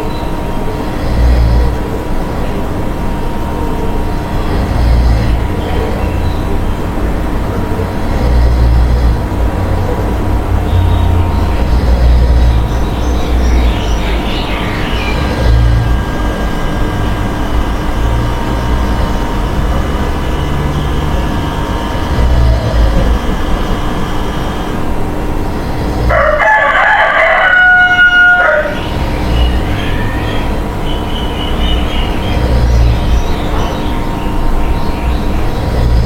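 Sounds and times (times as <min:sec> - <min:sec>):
loud steady-pitched call: 0:00.7 - 0:24.8
person snoring: 0:00.8 - 0:02.6, 0:04.0 - 0:06.4, 0:07.3 - 0:23.8, 0:32.2 - 0:33.4, 0:35.4 - 0:36.0.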